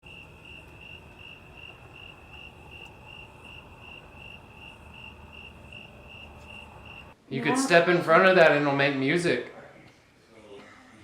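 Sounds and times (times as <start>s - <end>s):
cricket chirping: 0.0s - 7.2s
faint background noise: 0.0s - 11.0s.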